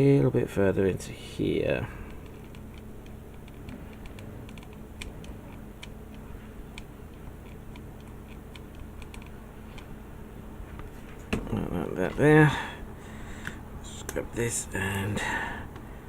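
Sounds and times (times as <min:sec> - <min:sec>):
low room hum: 0:00.0 - 0:16.0
small plastic clicks and taps: 0:02.1 - 0:09.9.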